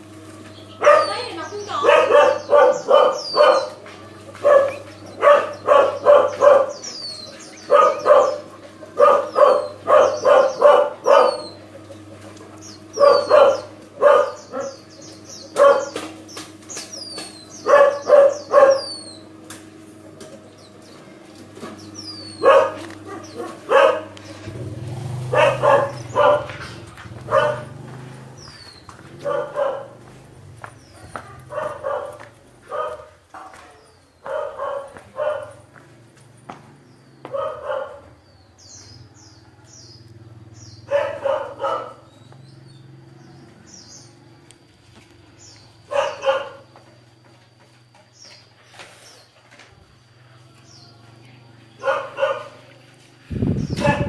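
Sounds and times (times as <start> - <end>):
small birds chirping: 0.0 - 47.0, 47.7 - 54.0
dog barking: 0.8 - 3.8, 4.4 - 6.9, 7.6 - 11.6, 12.9 - 14.8, 15.5 - 16.0, 17.6 - 19.0, 22.3 - 24.3, 25.3 - 27.8, 29.1 - 30.1, 30.9 - 35.7, 37.2 - 38.2, 40.8 - 42.1, 45.9 - 46.7, 51.8 - 52.6, 53.7 - 54.0.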